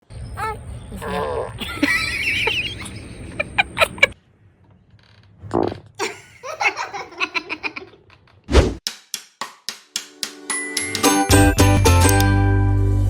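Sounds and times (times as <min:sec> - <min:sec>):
laughter and giggling: 0:01.6 - 0:04.2, 0:06.0 - 0:08.5.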